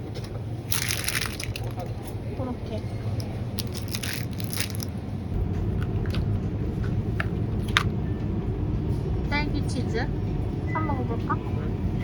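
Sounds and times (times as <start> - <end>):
steady low hum: 0.0 - 12.0
plastic packaging crinkling: 0.7 - 1.9, 3.6 - 5.0.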